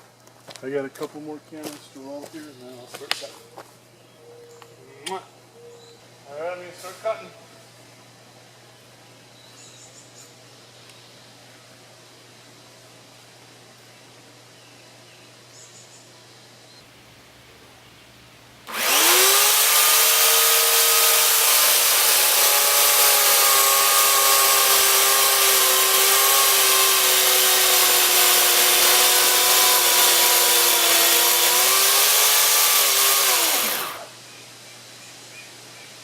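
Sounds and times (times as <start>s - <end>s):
electric chainsaw cutting wood: 18.7s - 34.2s.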